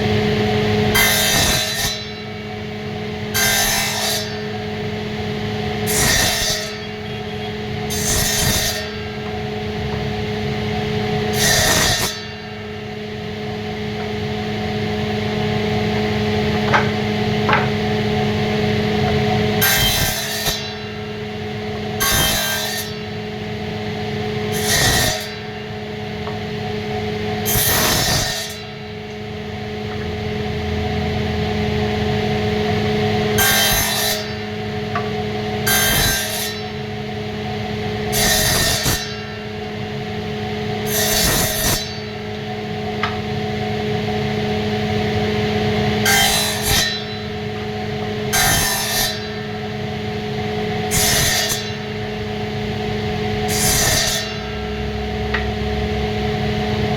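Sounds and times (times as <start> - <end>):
steady low hum: 4.3 - 22.1, 51.6 - 56.9.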